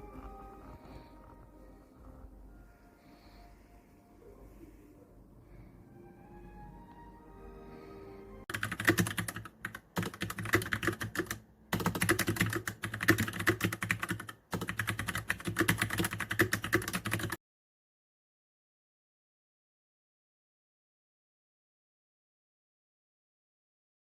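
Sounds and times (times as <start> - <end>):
soft music: 0.0 - 8.5
mechanical keyboard typing: 8.5 - 17.4.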